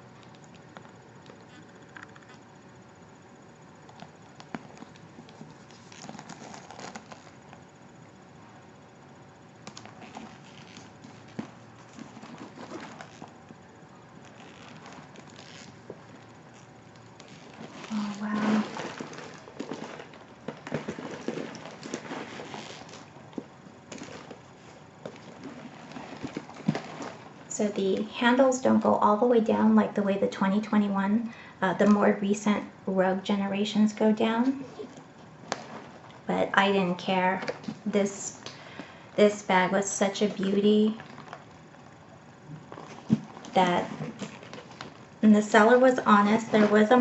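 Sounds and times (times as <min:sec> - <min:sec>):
leather bag rustling: 0:03.9 - 0:07.6, 0:09.8 - 0:28.0, 0:34.5 - 0:36.3, 0:40.9 - 0:41.9, 0:42.6 - 0:47.0.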